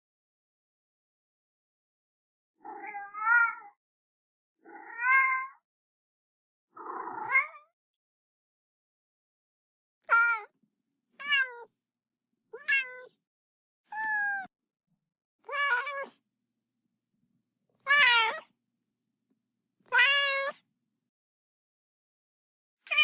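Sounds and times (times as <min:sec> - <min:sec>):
cat meowing loudly: 0:13.9 - 0:14.5, 0:15.4 - 0:16.2, 0:17.9 - 0:18.5, 0:19.9 - 0:20.6.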